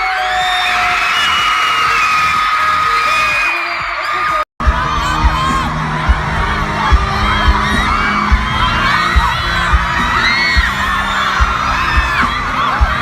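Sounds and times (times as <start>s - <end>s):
crowd screaming: 0.0s - 13.0s
music with steady low beat: 4.6s - 13.0s.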